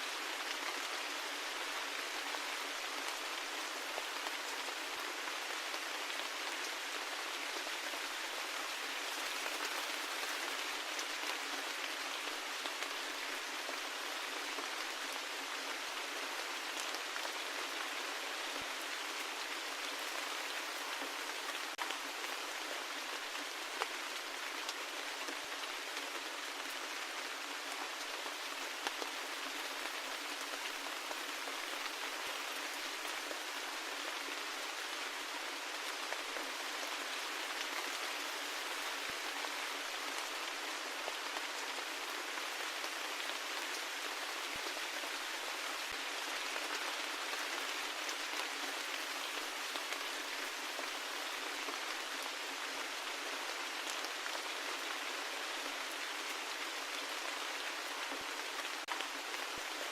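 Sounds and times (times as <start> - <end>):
steady rain patter: 0.0 - 59.9.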